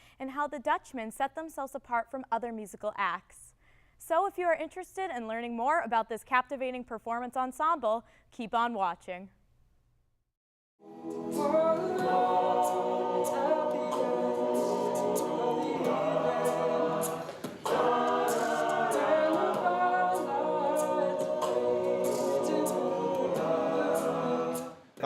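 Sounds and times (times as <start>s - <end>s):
male a cappella group singing: 10.9s - 25.0s
percussive beat: 11.4s - 24.7s.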